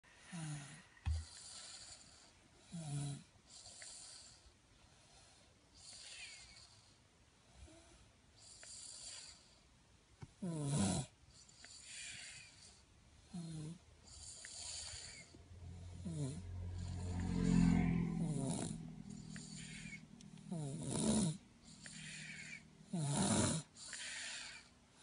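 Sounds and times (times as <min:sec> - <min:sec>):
man snoring: 0:00.2 - 0:04.4, 0:10.4 - 0:11.1, 0:13.3 - 0:24.7
low thump: 0:01.0 - 0:01.3
airy breaths: 0:14.0 - 0:17.8, 0:19.0 - 0:20.6, 0:21.3 - 0:22.9, 0:23.6 - 0:25.0.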